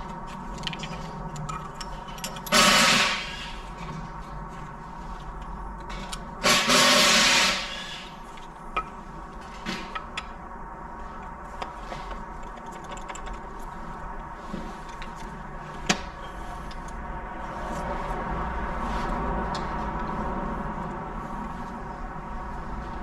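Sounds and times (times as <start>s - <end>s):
metal parts and tools clicking: 0.5s - 3.8s, 12.1s - 13.8s
loud hiss: 2.6s - 3.6s, 6.4s - 8.2s.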